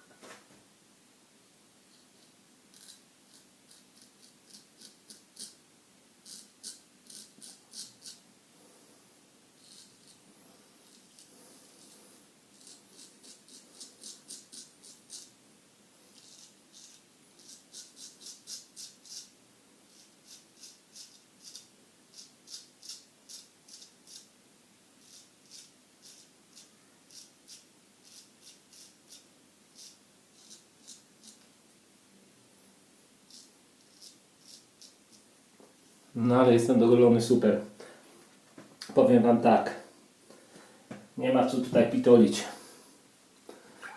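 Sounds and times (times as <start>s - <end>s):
straight razor scraping stubble: 2.2s - 5.6s, 6.2s - 8.2s, 9.6s - 10.2s, 10.8s - 15.3s, 16.2s - 19.3s, 19.9s - 24.3s, 25.0s - 29.2s, 29.8s - 31.4s, 33.3s - 35.2s.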